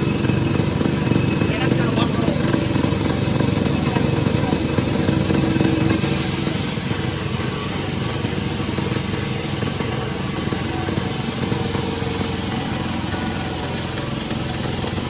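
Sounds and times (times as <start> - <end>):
sawmill machinery engine running: 0.0 - 15.0.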